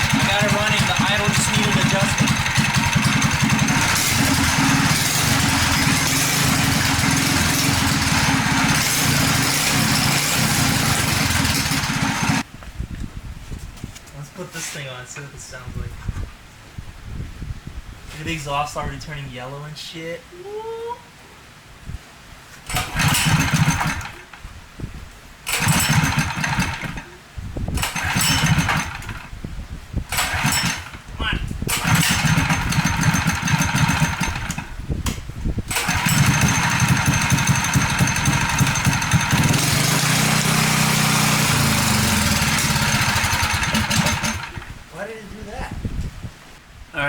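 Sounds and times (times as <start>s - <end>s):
dirt bike engine running: 0.0s - 12.5s, 22.7s - 24.2s, 25.5s - 27.0s, 27.8s - 29.3s, 30.1s - 31.0s, 31.7s - 34.8s, 35.7s - 44.8s.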